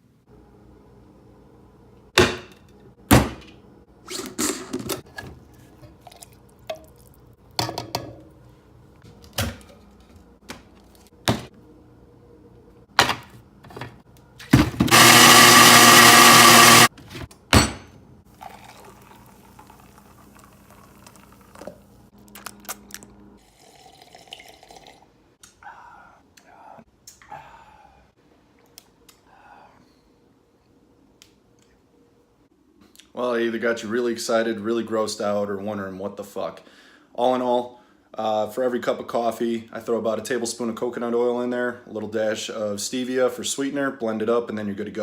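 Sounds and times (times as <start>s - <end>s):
countertop blender running: 14.8s - 16.9s.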